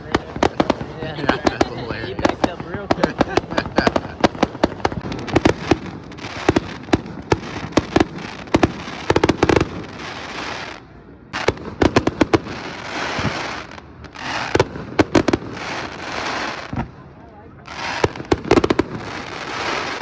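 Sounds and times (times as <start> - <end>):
crackling fireworks shells: 0.0 - 10.6
fireworks bangs: 0.0 - 20.0.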